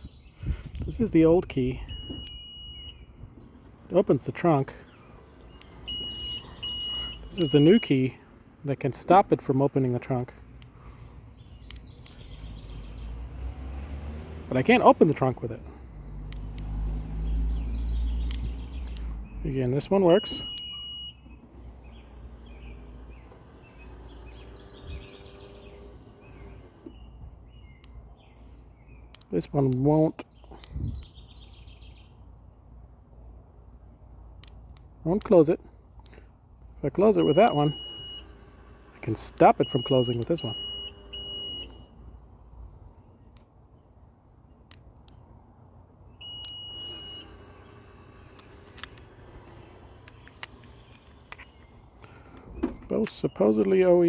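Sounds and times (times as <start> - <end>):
birds chirping: 0.0 - 54.0
car warning beep: 1.7 - 3.8, 5.0 - 8.2, 19.3 - 27.3, 37.0 - 42.1, 46.2 - 53.9
faint clicks: 48.3 - 53.8.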